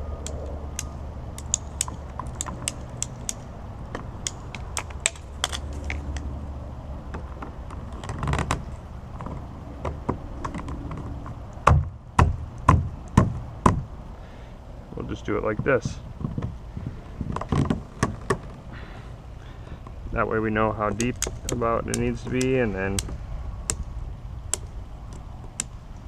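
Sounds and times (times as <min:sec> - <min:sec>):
steady low hum: 0:00.0 - 0:26.0
plastic pipe fittings clicking: 0:00.2 - 0:06.2.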